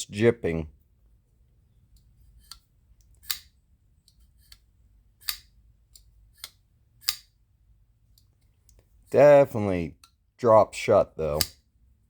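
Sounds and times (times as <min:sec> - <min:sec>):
folding knife clicking open and shut: 0:02.0 - 0:04.6, 0:05.2 - 0:07.3, 0:11.3 - 0:11.6.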